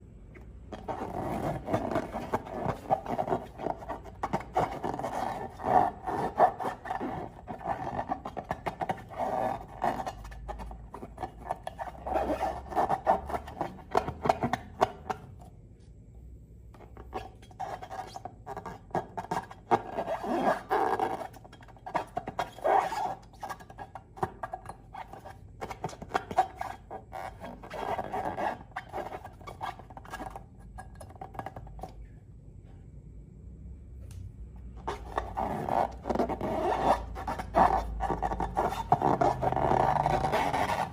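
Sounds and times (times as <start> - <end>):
rubbery squeaking and squelching: 0.7 - 15.3, 16.9 - 32.0, 34.7 - 40.9.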